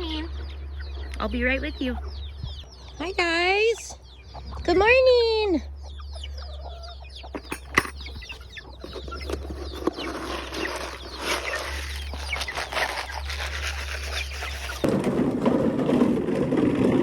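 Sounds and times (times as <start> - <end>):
chickens clucking: 0.0 - 17.0.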